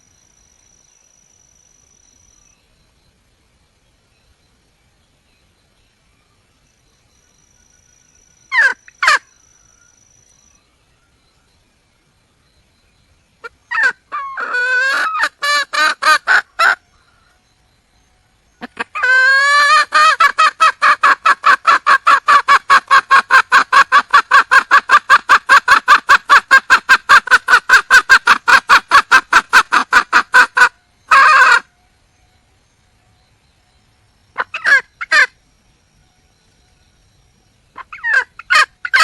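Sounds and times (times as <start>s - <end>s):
hen clucking: 13.4s - 16.8s, 18.6s - 31.7s, 34.4s - 35.3s, 37.8s - 39.0s.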